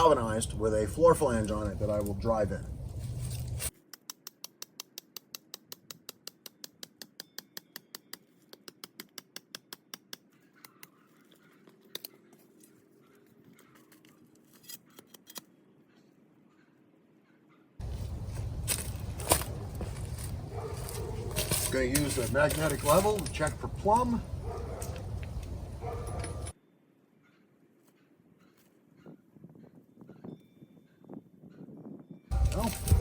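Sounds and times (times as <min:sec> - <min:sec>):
hammer striking steel stake: 0:32.3 - 0:33.0.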